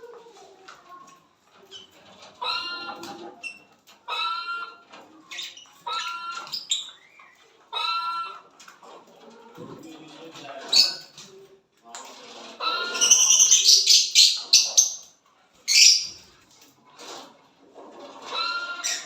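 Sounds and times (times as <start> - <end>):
faint parrot chatter: 0.0 - 9.2, 12.2 - 16.4, 18.0 - 19.0
parrots calling harshly: 2.4 - 3.2, 5.4 - 8.4, 12.6 - 15.1, 15.7 - 16.3, 18.3 - 19.0.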